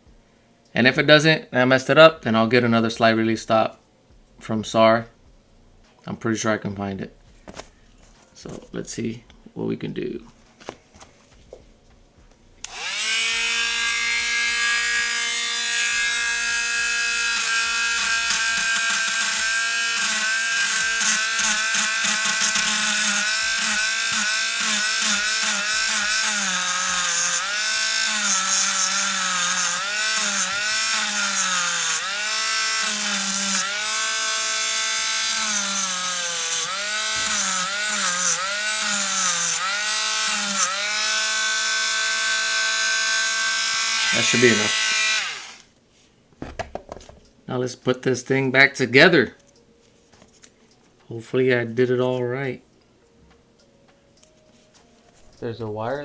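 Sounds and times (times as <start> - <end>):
electric rotary tool grinding metal: 12.6 - 45.7.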